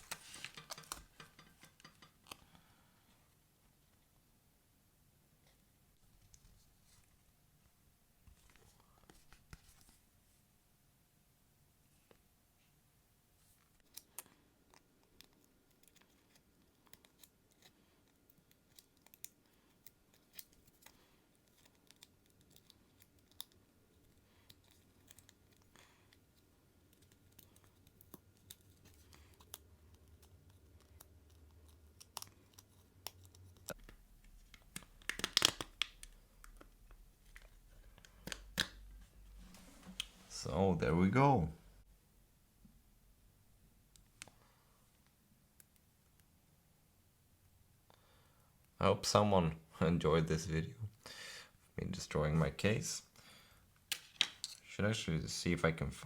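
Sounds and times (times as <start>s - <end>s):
small clicks and scratches: 0.0s - 2.5s, 13.6s - 40.2s.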